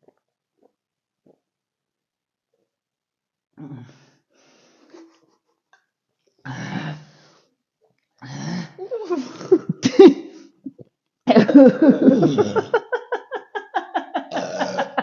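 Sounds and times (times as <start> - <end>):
person laughing: 11.4 - 15.0.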